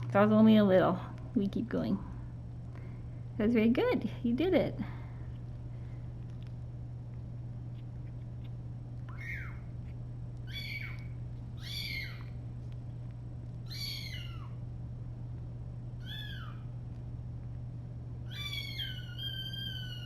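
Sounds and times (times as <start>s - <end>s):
steady low hum: 0.0s - 20.0s
kitten mewing: 9.1s - 9.7s, 10.4s - 12.4s, 13.6s - 14.6s, 16.0s - 16.7s, 18.3s - 20.0s.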